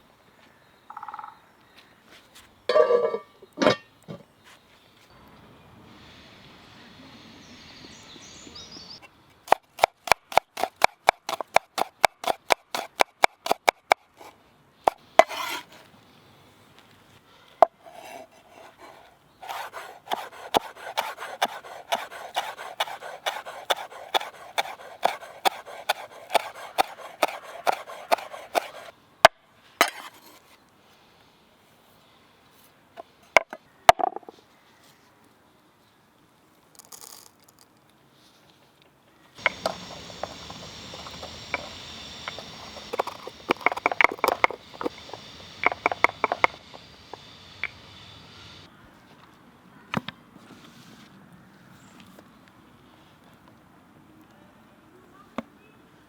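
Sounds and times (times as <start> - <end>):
knife chopping on wooden board: 9.5 - 14.0, 14.9 - 15.6, 18.0 - 28.9, 39.4 - 46.6
knife scraping board: 9.5 - 14.3, 14.9 - 15.9, 17.8 - 28.9, 29.8 - 30.4, 39.4 - 46.6.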